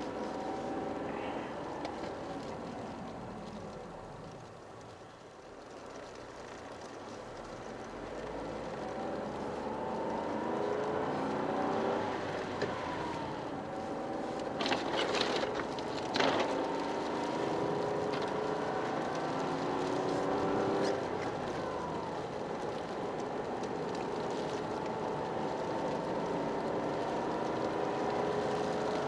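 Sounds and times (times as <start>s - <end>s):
car engine revving: 8.0s - 29.0s.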